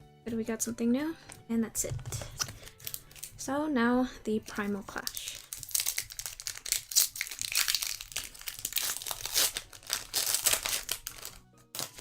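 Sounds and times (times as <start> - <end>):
wrapper crinkling and tearing: 2.3 - 3.4, 4.6 - 12.0.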